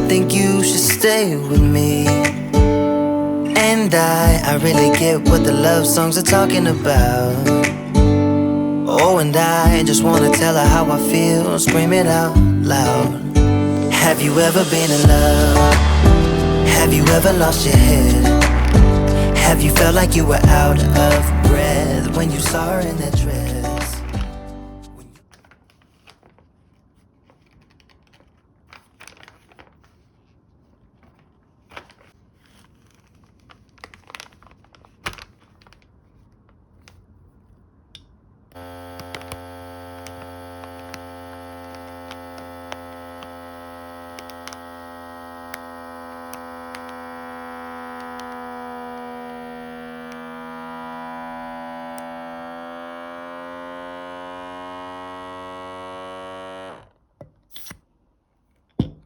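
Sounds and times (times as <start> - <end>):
vacuum sealer pump humming: 0.0 - 24.9, 38.5 - 56.9.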